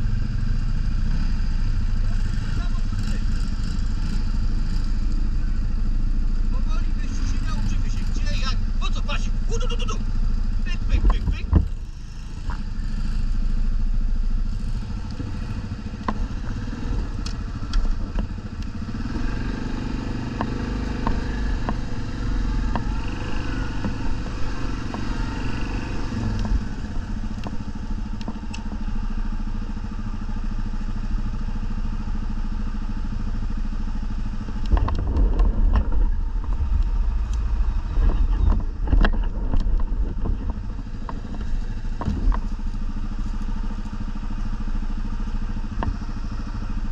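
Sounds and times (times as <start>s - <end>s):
quad bike engines revving: 0.0s - 46.9s
knocks and clatter: 34.4s - 42.6s.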